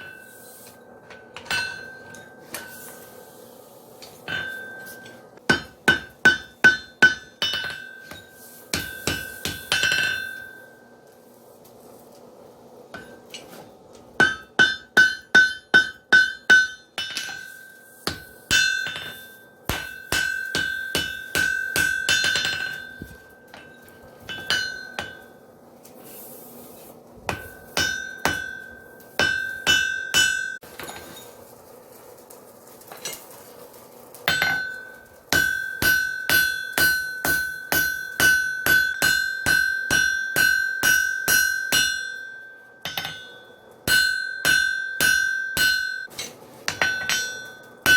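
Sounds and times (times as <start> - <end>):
hammer ringing on anvil: 1.4 - 2.8, 4.3 - 10.8, 14.2 - 25.4, 27.3 - 30.6, 34.3 - 47.9.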